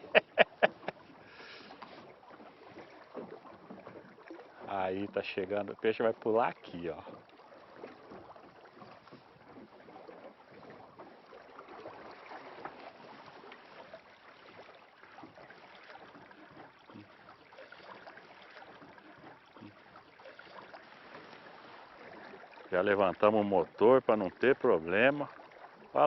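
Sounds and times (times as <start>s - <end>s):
faint water hiss: 1.2s - 2.1s.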